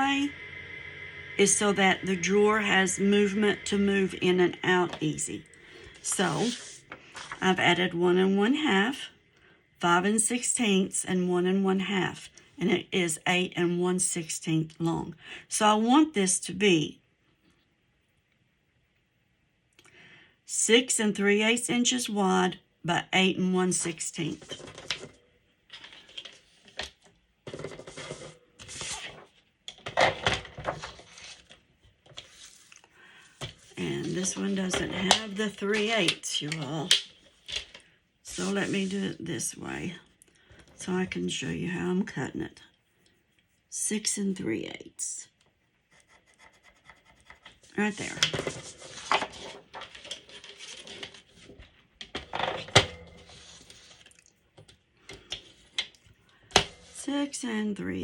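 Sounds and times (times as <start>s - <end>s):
paper rustling and sliding: 3.3s - 7.6s, 24.2s - 32.8s, 33.4s - 39.2s, 47.9s - 54.2s.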